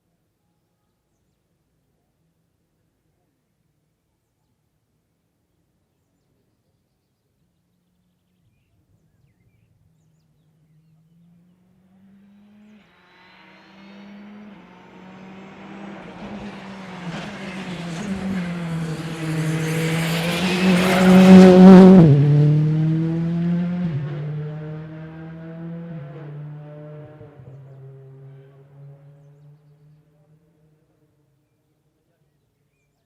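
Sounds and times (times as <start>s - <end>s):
rally car passing by: 11.1s - 30.8s.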